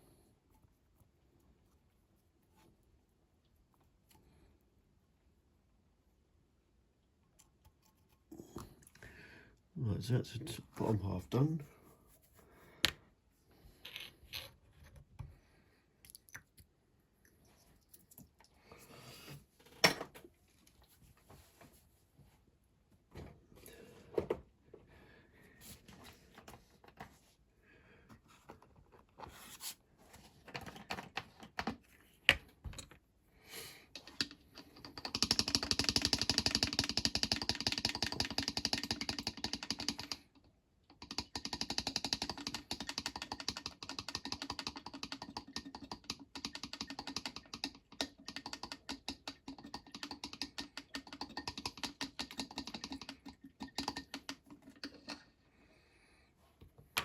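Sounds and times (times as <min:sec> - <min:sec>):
rapid clicking rattle: 0:34.0 - 0:40.3, 0:41.0 - 0:55.2.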